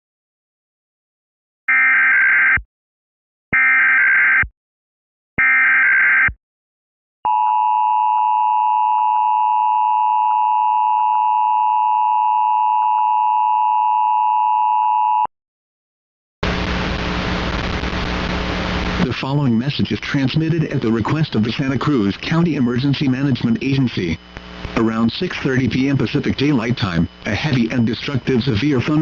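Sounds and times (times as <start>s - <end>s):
digital data tone bursts: 24.8s - 29.0s
steady attention signal tone: 24.8s - 29.0s.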